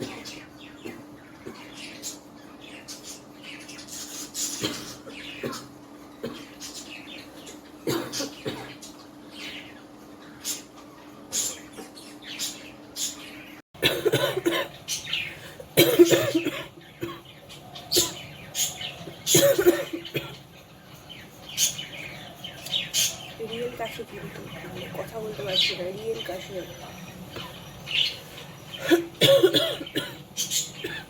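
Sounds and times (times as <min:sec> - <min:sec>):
woman coughing: 0:07.8 - 0:08.8, 0:13.8 - 0:14.8, 0:15.8 - 0:17.2, 0:19.3 - 0:20.4, 0:28.8 - 0:30.2, 0:30.8 - 0:31.0.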